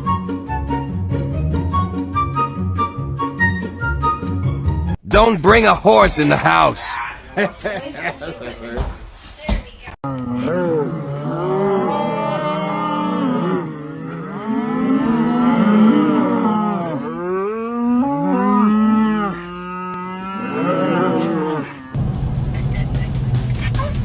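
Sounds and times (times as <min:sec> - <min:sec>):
cattle mooing: 0:10.1 - 0:22.0.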